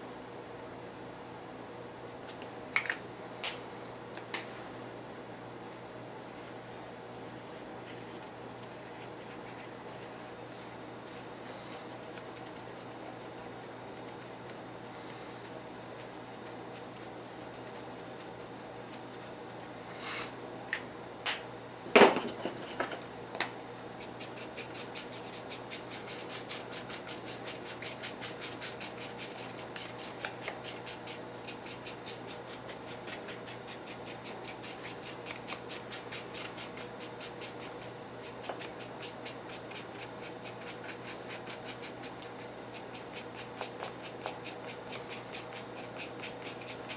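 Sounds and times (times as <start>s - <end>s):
marker scratching on paper: 24.0s - 46.9s.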